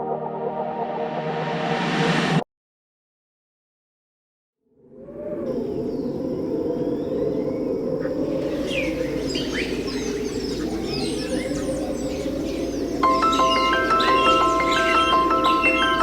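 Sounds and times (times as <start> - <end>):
birds chirping: 5.5 - 16.0
marimba music: 13.0 - 16.0.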